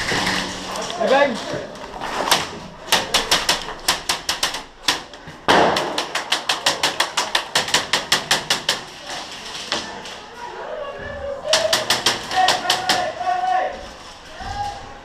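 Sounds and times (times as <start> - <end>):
airsoft gun firing: 2.9 - 8.7.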